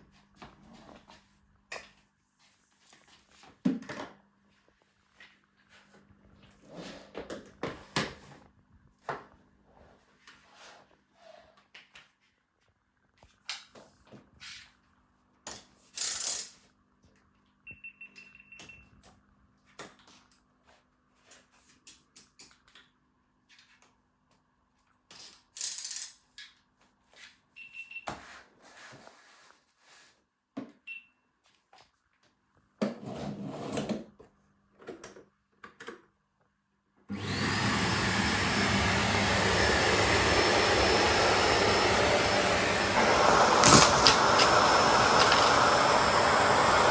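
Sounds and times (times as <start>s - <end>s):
vacuum cleaner motor whine: 37.1s - 46.9s.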